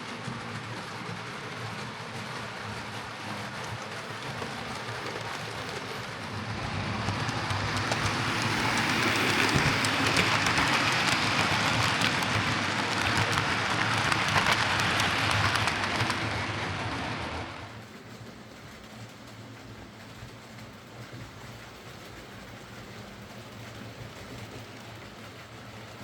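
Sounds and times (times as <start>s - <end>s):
wheels crackling on rails: 0.0s - 26.0s
model train motor whirring: 2.4s - 17.7s.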